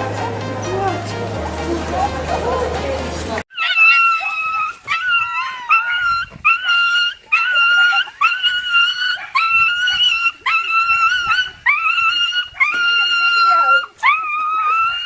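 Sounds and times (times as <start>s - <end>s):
dog whining: 3.5s - 15.0s.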